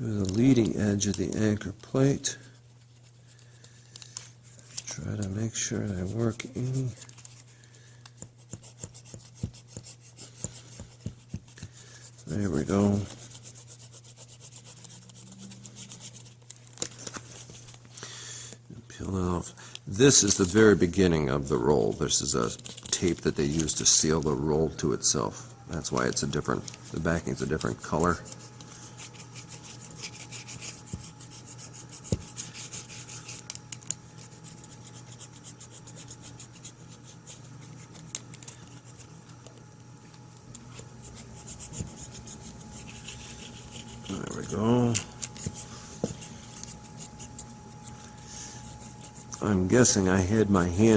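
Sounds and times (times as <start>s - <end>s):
rubbing strokes on tape: 5.6s - 7.5s, 8.1s - 16.5s, 27.0s - 33.5s, 34.2s - 39.2s, 40.7s - 50.9s.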